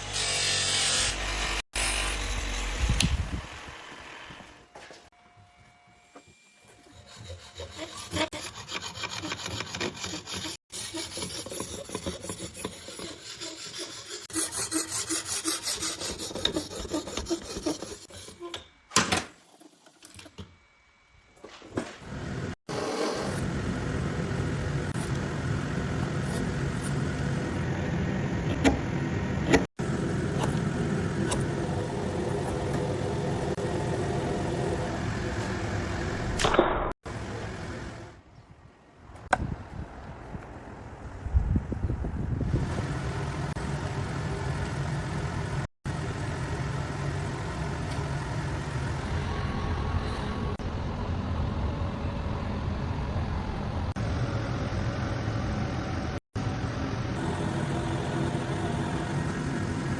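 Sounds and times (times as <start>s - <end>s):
hand sawing or filing: 6.7s - 18.5s.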